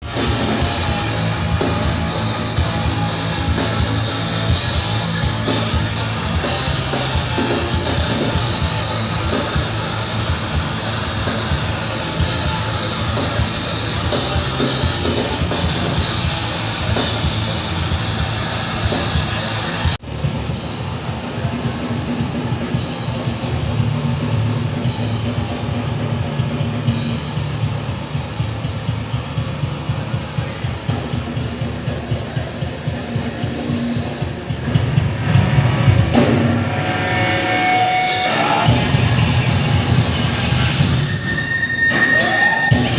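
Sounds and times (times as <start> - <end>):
distorted guitars: 0.0 - 42.9
drum kit: 0.0 - 42.9.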